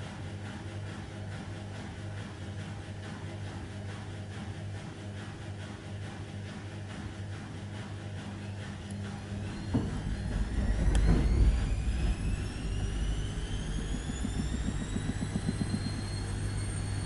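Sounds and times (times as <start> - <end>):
washing machine drum whine: 8.3 - 17.0.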